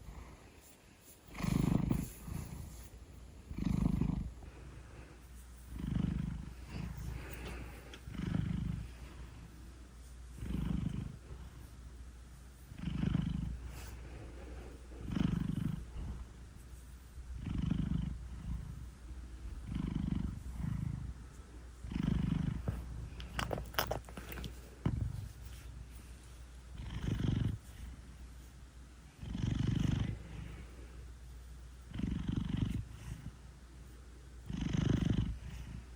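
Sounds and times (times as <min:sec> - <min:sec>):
cat purring: 0:00.0 - 0:35.9
cat snoring: 0:01.3 - 0:02.9, 0:03.5 - 0:04.8, 0:05.7 - 0:09.6, 0:10.3 - 0:11.7, 0:12.7 - 0:16.4, 0:17.3 - 0:21.2, 0:21.8 - 0:25.9, 0:26.7 - 0:28.1, 0:29.1 - 0:30.7, 0:31.9 - 0:33.4, 0:34.4 - 0:35.9.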